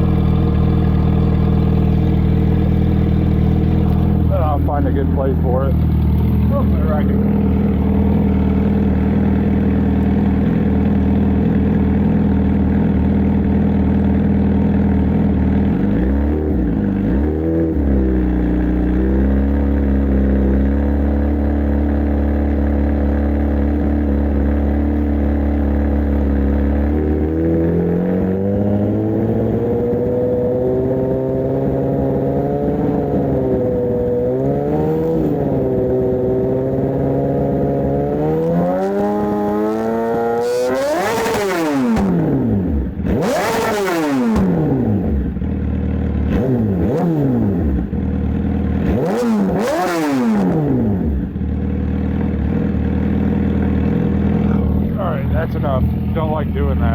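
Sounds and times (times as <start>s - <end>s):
engine revving: 0.0s - 56.9s.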